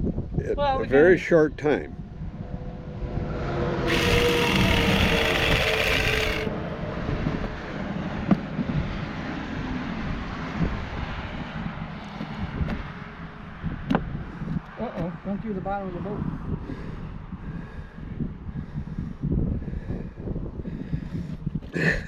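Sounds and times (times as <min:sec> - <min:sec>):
chainsaw cutting pumpkin: 0:03.9 - 0:06.5.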